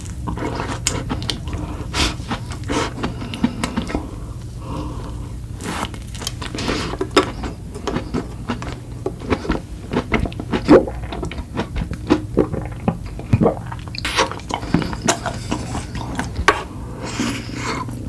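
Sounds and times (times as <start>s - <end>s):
biting and chewing: 0.0s - 4.2s, 5.0s - 16.5s
wet mouth clicks: 12.4s - 15.4s.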